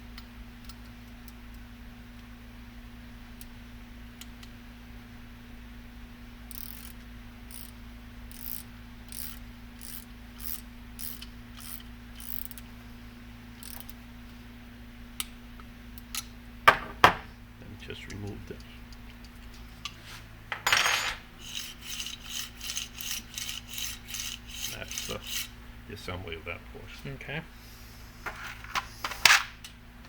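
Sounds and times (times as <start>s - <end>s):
low steady hum: 0.0s - 30.0s
ratchet tool clicking: 6.5s - 12.7s, 13.6s - 14.0s, 21.4s - 25.5s.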